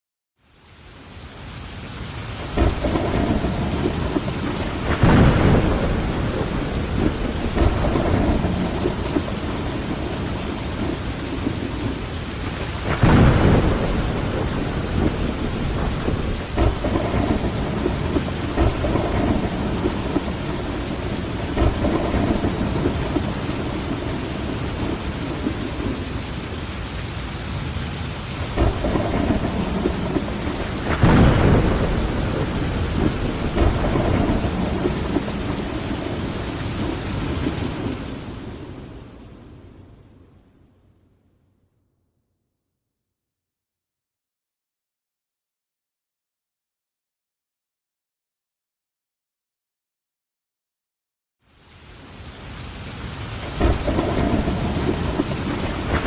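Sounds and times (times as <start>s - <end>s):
rain on window glass: 0.4s - 40.2s, 51.4s - 56.0s
thunder rumbling: 1.8s - 39.8s, 52.6s - 56.0s.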